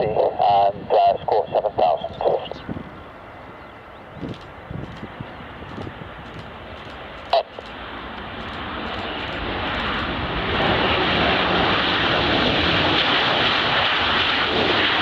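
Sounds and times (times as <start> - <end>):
jet engines roaring: 0.0 - 15.0
sharp click: 5.7 - 10.1.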